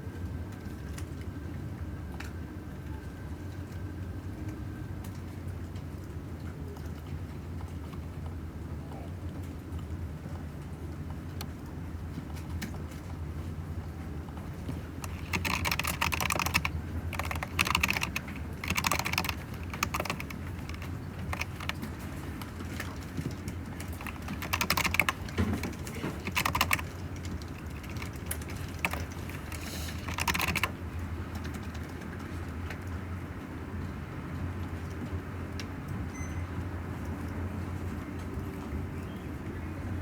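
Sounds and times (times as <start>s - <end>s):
keyboard typing: 14.8s - 32.0s.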